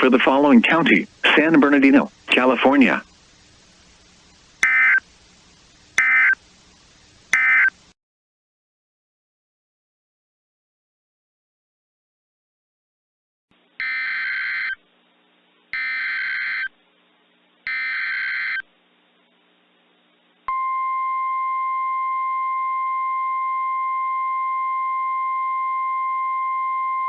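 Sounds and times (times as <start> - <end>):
steady alarm tone: 4.6 - 5.0, 6.0 - 6.4.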